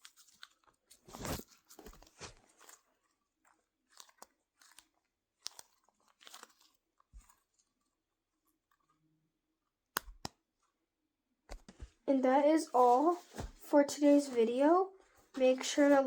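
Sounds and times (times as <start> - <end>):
foam toys crackling and rustling: 0.0 - 8.9, 12.2 - 16.0.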